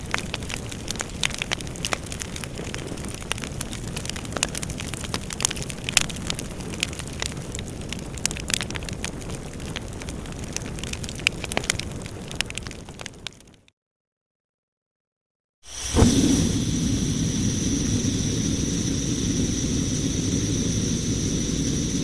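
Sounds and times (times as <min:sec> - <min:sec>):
fireplace fire burning: 0:00.0 - 0:13.7, 0:15.7 - 0:22.0
wood crackling and popping: 0:00.0 - 0:13.7.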